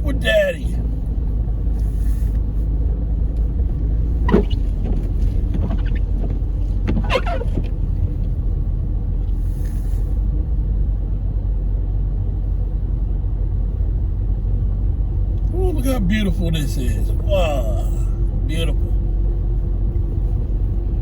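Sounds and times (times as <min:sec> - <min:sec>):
car engine and tyre rumble: 0:00.0 - 0:21.0
short squeaks: 0:04.2 - 0:08.0.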